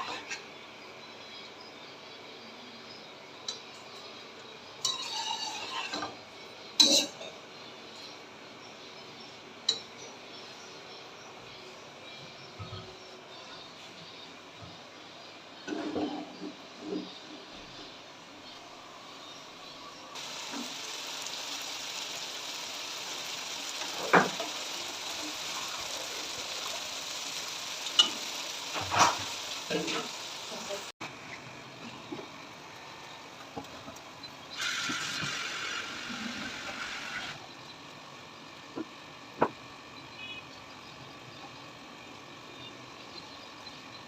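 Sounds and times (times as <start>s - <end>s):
food sizzling in a pot: 4.7s - 7.3s, 20.2s - 30.9s, 34.5s - 37.6s
dishes and utensils clattering: 4.8s - 6.2s, 6.8s - 7.4s, 15.6s - 17.1s.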